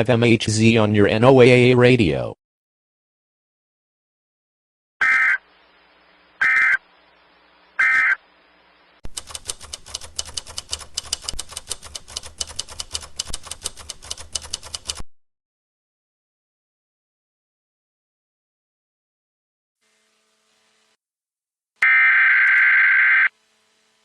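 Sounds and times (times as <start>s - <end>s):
buzzy warbling data bursts: 6.4s - 6.8s
rapid typewriter-like clicking: 9.1s - 15.0s.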